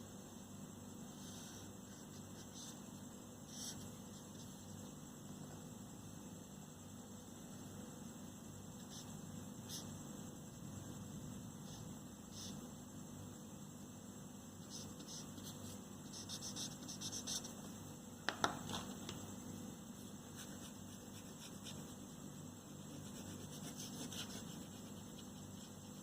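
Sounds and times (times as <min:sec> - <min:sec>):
pencil scratching on paper: 0:14.6 - 0:17.6, 0:22.8 - 0:26.0.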